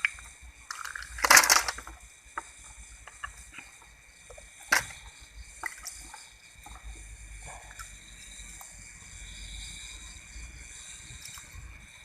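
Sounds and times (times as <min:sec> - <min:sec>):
snail shells clicking in water: 0:00.0 - 0:06.9
steady high whine: 0:00.0 - 0:12.0.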